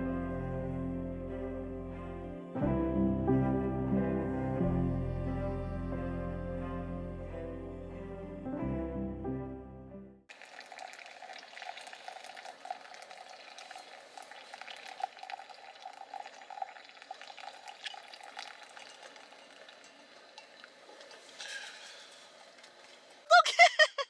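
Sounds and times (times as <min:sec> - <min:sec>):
pot bubbling with crackles: 0:10.3 - 0:23.3.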